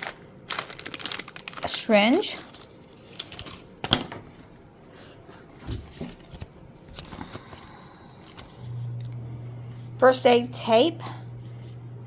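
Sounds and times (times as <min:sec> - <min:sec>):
plastic packages rustling and knocking: 0:00.0 - 0:04.6
low steady hum: 0:00.0 - 0:12.0.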